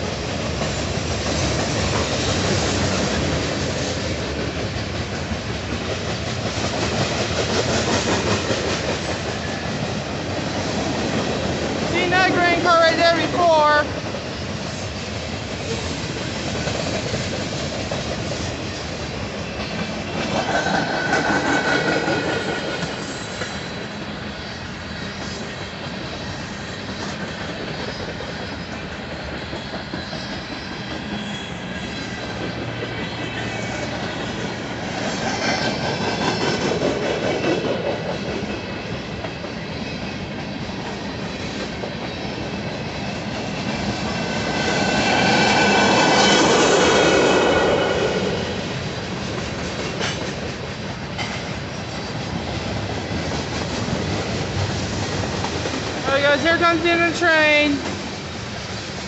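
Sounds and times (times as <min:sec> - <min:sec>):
train wheels clattering over rail joints: 0:00.0 - 0:11.9, 0:13.9 - 0:24.0, 0:25.0 - 0:56.0.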